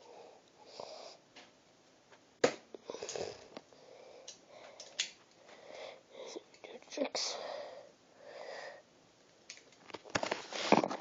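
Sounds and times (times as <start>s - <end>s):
person sniffing and breathing: 2.8s - 6.5s.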